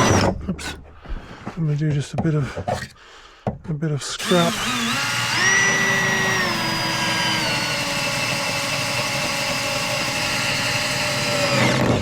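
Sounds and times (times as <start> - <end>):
electric power tool whining: 4.2 - 12.0.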